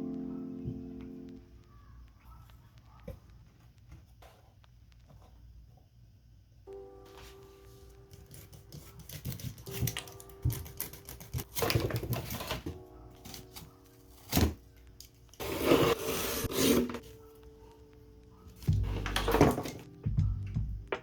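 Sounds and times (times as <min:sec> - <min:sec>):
quiet background music: 0:00.0 - 0:21.0
cardboard clattering and rustling: 0:11.5 - 0:14.6.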